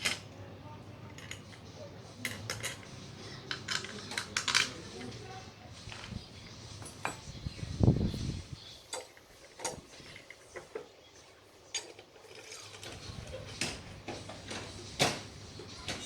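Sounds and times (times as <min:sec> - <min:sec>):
hand tools clinking on metal: 0:01.1 - 0:06.2, 0:06.8 - 0:07.4, 0:08.8 - 0:10.9, 0:11.6 - 0:16.0.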